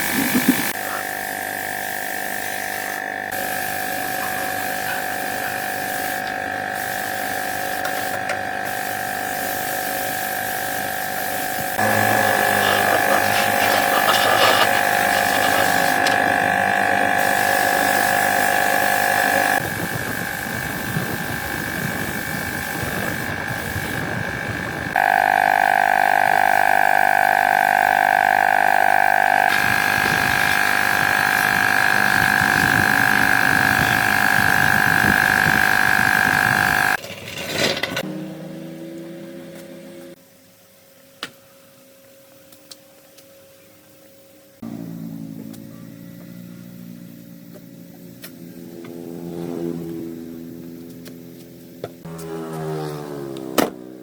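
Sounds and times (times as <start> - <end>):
power tool motor whining: 11.4 - 37.0.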